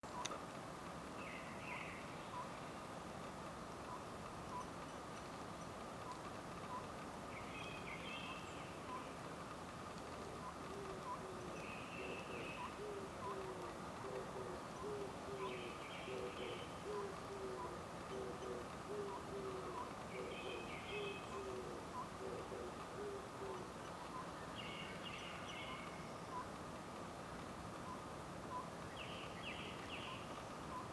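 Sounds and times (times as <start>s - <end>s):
birds chirping: 1.2s - 3.1s, 3.8s - 26.6s, 27.8s - 30.9s
owl hooting: 10.2s - 24.3s.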